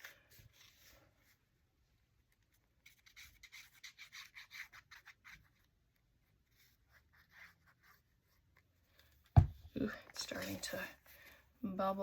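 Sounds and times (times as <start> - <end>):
paper rubbing and scratching: 2.4 - 8.6.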